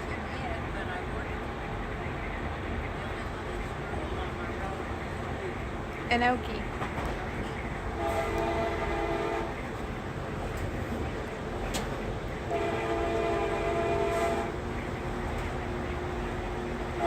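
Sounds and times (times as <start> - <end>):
rolling train rumble: 0.0 - 17.0
train horn blasts: 7.9 - 9.7, 12.5 - 14.6.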